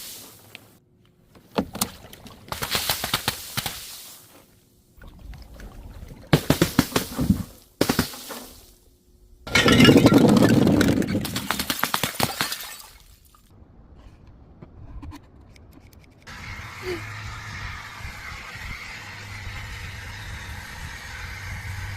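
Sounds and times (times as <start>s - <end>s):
glass cracking and shattering: 9.5s - 13.4s
small clinks of broken glass: 12.2s - 13.2s.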